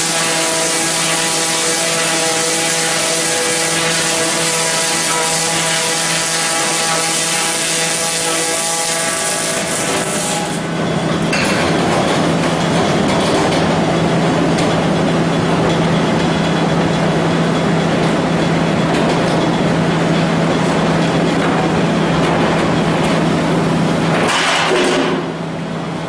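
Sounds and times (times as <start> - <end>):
log debarking machine running: 0.0 - 26.0.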